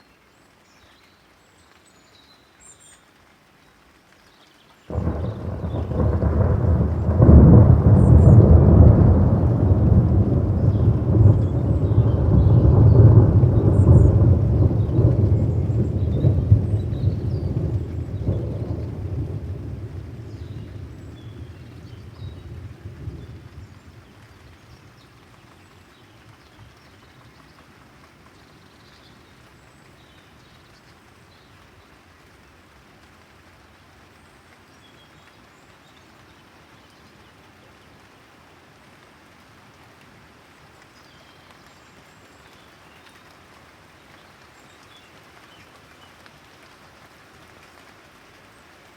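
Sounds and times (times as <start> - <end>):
rain falling: 0.0 - 48.9
thunder rumbling: 4.9 - 24.4.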